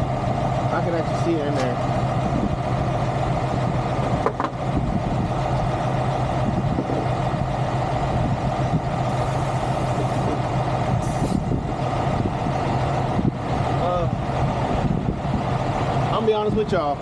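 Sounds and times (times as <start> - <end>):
truck diesel engine idling: 0.0 - 17.0
faint short hisses: 11.0 - 11.5.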